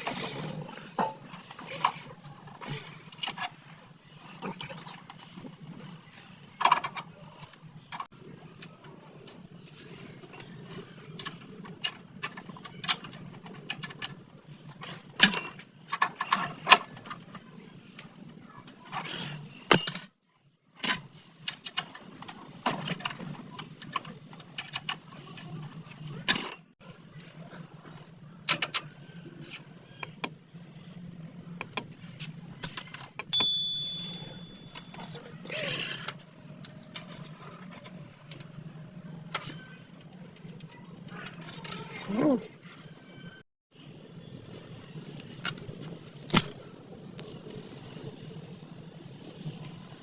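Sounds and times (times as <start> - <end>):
metal tools clinking: 15.2 - 16.5, 19.7 - 21.1, 26.3 - 26.7, 32.6 - 35.2
ringing metal strikes: 19.7 - 20.4, 33.3 - 35.0
low steady hum: 27.4 - 41.2.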